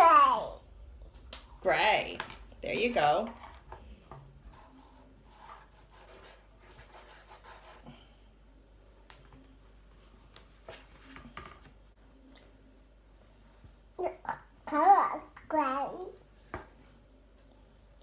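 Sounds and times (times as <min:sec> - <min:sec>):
marker scribbling on paper: 0:04.5 - 0:07.8.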